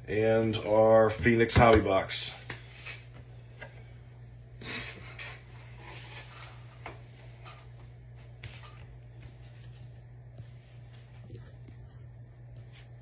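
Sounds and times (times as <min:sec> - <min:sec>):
low electrical hum: 0:00.0 - 0:13.0
rustling of things handled on table: 0:04.7 - 0:13.0.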